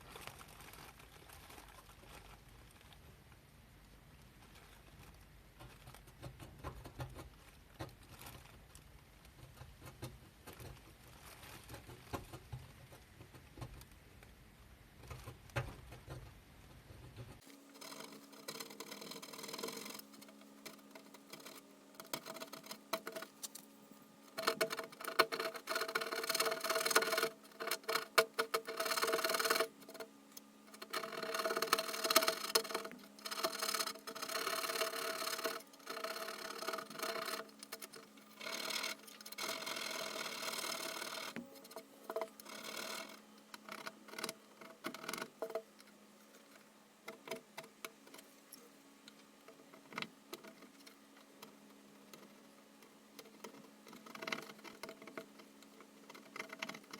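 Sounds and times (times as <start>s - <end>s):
small motor tool whirring: 17.4s - 45.6s.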